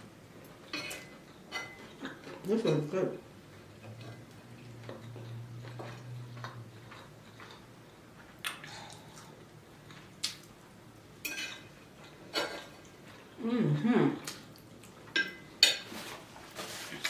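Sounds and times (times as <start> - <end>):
person chewing food: 3.5 - 10.8.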